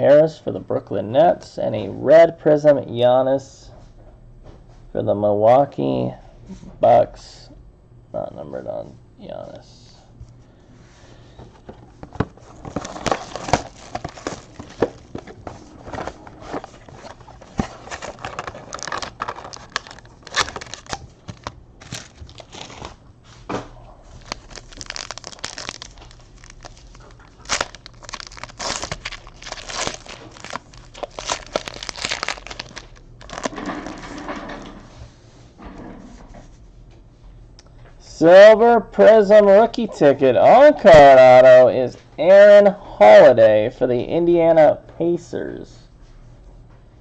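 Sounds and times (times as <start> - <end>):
foil wrappers tearing and crinkling: 12.4 - 23.0, 24.1 - 34.2.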